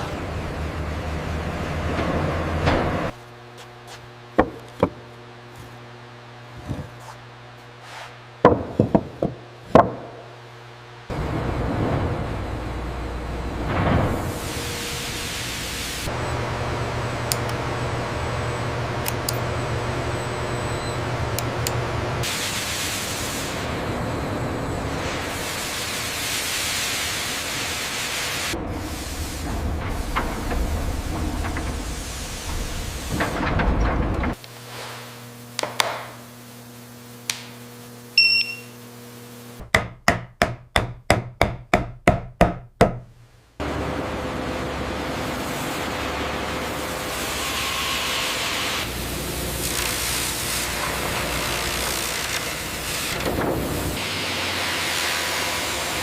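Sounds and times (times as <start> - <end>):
low machinery hum: 0.0 - 26.3, 27.2 - 39.7, 43.2 - 54.0
sharp knocks: 4.4 - 5.0
machinery hiss: 14.1 - 16.2, 22.2 - 24.3, 24.9 - 33.5.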